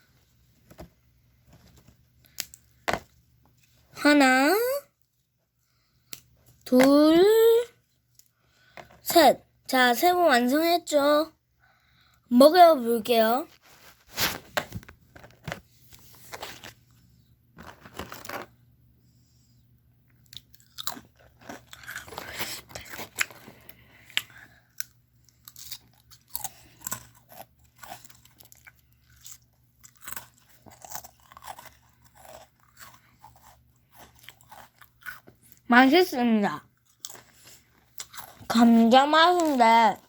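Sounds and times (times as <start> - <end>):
child chewing crunchy snack: 20.1 - 35.7, 36.6 - 40.0.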